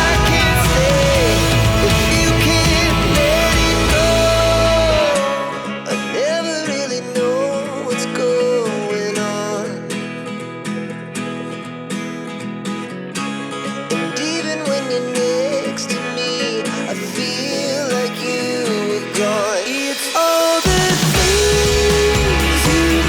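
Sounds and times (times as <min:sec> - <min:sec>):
gliding lead melody: 0:00.0 - 0:05.1
plucked acoustic guitar: 0:00.0 - 0:23.0.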